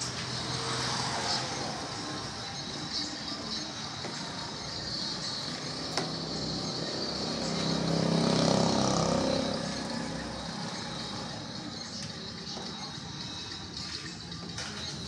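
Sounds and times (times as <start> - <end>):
vehicle engine passing: 5.2 - 11.7.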